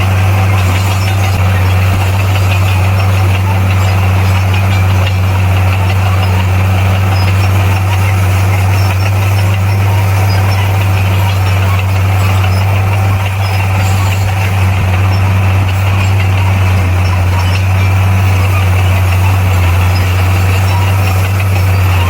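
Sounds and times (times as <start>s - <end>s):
diesel engine droning: 0.0s - 22.0s.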